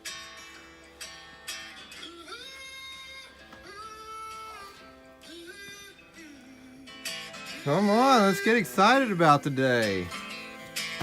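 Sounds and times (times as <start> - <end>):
acoustic guitar: 0.0 - 11.0
person singing: 1.7 - 10.2.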